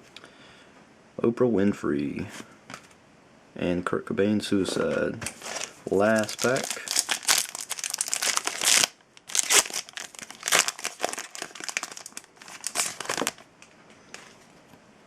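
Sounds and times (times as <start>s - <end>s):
wrapper being torn and crinkled: 5.4s - 13.5s.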